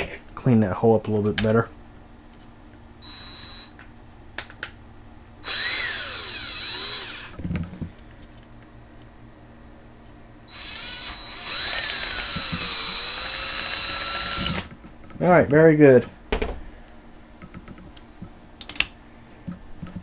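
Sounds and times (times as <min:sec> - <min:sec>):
electric drill running: 0:03.0 - 0:03.7, 0:05.4 - 0:07.4, 0:10.5 - 0:14.7.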